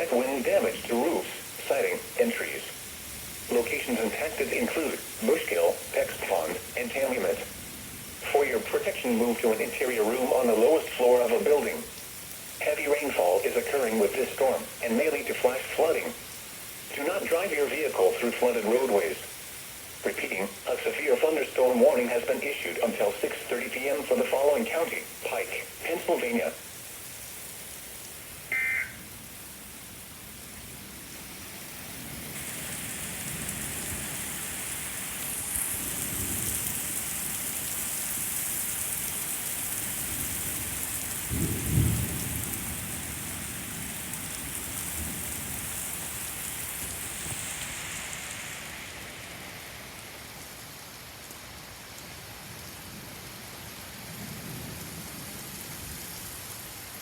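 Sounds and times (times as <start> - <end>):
heavy rain pouring: 0.0 - 57.0
short beep: 28.5 - 29.0
thunder rolling: 41.3 - 43.3.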